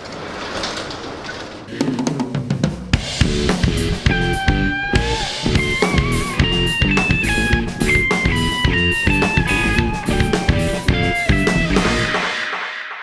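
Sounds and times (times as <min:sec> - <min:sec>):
drum kit beat: 0:01.7 - 0:13.0
guitar chords: 0:03.0 - 0:12.6
lead guitar held notes: 0:03.2 - 0:12.5.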